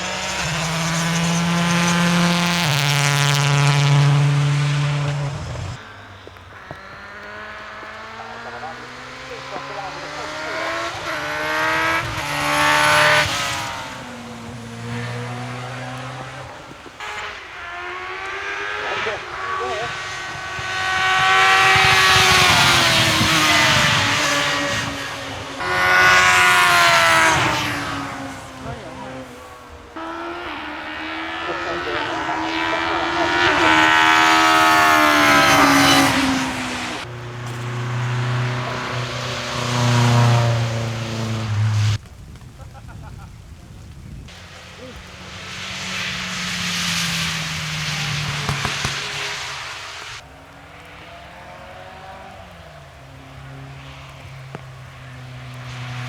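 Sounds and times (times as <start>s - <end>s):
race car engine accelerating: 0.0s - 42.2s, 44.3s - 56.0s.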